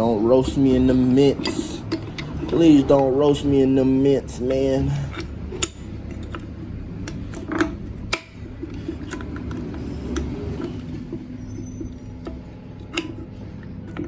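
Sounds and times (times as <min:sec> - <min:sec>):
metal clicks and clinks: 0:00.0 - 0:10.9.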